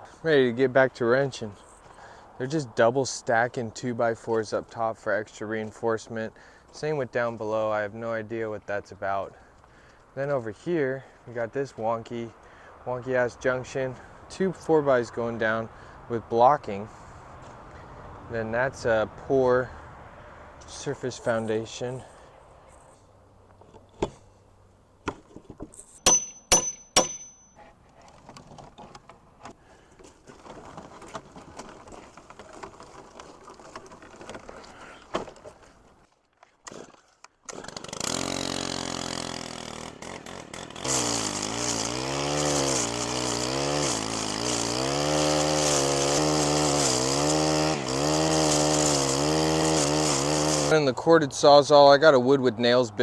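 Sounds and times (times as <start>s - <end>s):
ringing metal clinks: 26.0s - 27.6s
reciprocating saw cutting wood: 36.7s - 50.8s.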